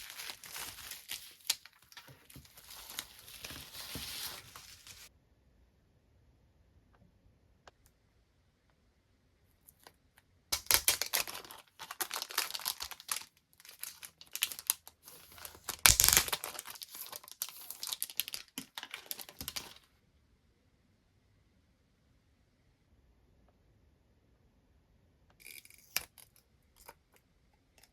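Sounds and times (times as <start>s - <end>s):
packaging crinkled and torn open: 0.0s - 5.1s, 10.6s - 19.8s.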